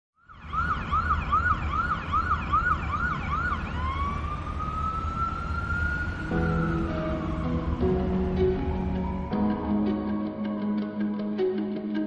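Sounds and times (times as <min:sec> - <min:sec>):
emergency vehicle siren: 0:00.2 - 0:11.2
music: 0:06.3 - 0:12.0.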